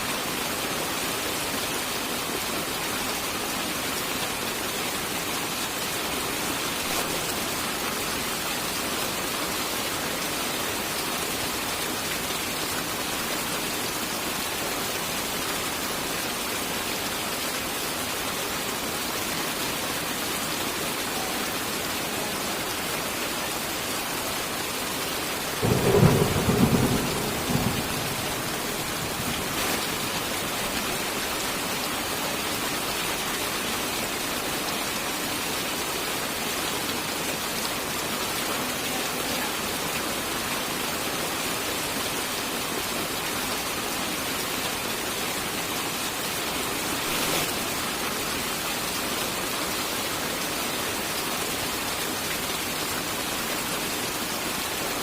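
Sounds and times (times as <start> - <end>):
steady rain hissing: 0.0 - 55.0
thunder clap: 25.6 - 29.8.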